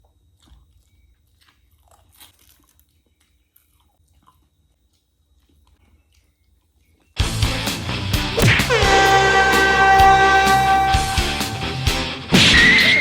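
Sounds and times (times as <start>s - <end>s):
crunchy chewing of food: 0.0s - 7.2s
low hum: 8.3s - 12.3s.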